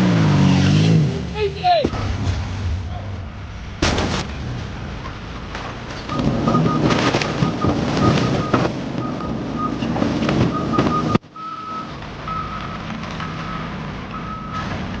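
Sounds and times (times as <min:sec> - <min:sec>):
engine rumble: 0:00.0 - 0:15.0
reversing alarm beeping: 0:06.1 - 0:09.8, 0:10.5 - 0:14.6.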